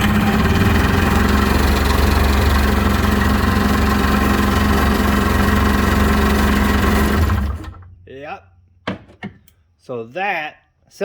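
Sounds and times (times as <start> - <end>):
two-stroke engine idling: 0.0 - 7.8.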